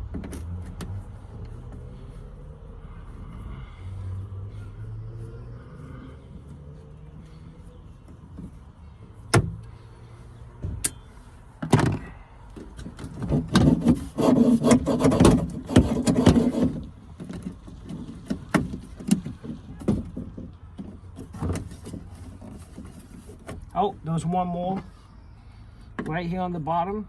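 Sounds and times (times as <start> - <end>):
scraping and rattling: 11.7 - 23.7.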